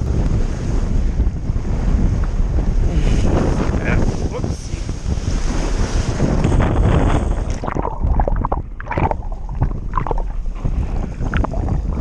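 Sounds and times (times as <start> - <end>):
wind buffeting microphone: 0.0 - 12.0
water splashing and gurgling: 2.8 - 12.0.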